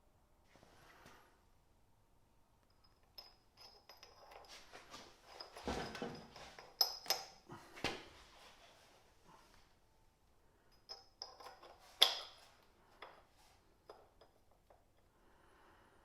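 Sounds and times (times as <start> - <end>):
small metal parts clinking: 2.7 - 4.7, 5.3 - 7.4, 10.7 - 13.3.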